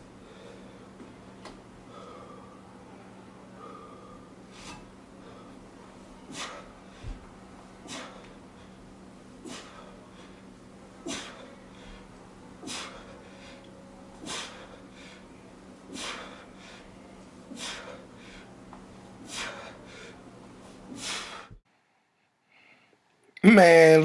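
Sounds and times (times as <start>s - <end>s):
man breathing hard: 0.2s - 1.0s, 1.8s - 2.7s, 3.6s - 5.7s, 9.4s - 10.4s, 11.0s - 18.6s, 19.2s - 20.2s.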